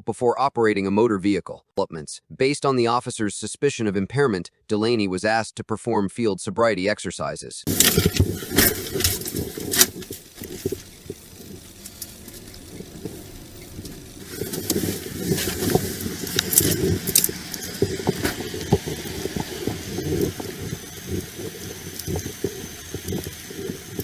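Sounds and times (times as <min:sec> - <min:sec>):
gear rustling clinking and rattling: 0:07.7 - 0:24.0
vehicle noise: 0:07.7 - 0:24.0.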